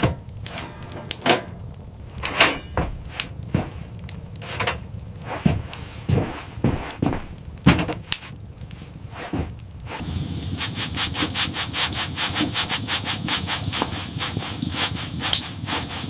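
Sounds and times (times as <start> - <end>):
knocks: 6.2 - 8.0
fast rhythmic rubbing strokes: 9.2 - 16.0.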